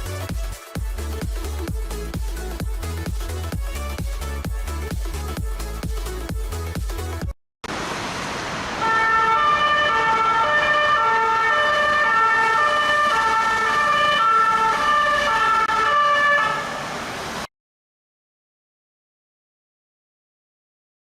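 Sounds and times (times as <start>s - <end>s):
electronic two-tone siren: 8.8s - 16.8s.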